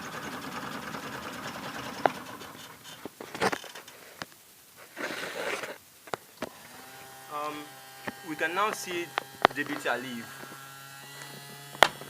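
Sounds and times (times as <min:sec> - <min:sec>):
small motor running: 0:00.0 - 0:03.0, 0:06.5 - 0:12.0.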